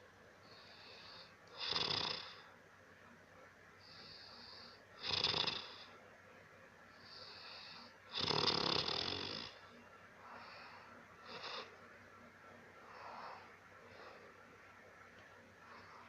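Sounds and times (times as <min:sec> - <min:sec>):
wheezy breath: 0:00.4 - 0:02.5, 0:03.8 - 0:04.9, 0:06.9 - 0:08.0, 0:10.2 - 0:11.8
person snoring loudly: 0:01.6 - 0:02.4, 0:05.0 - 0:05.9, 0:08.1 - 0:09.6.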